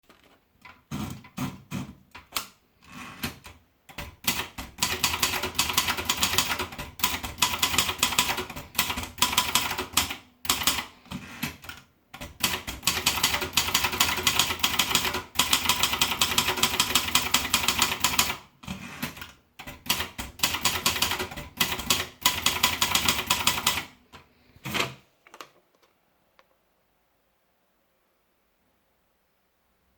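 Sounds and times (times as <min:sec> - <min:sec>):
typewriter keystrokes: 0:00.9 - 0:23.9.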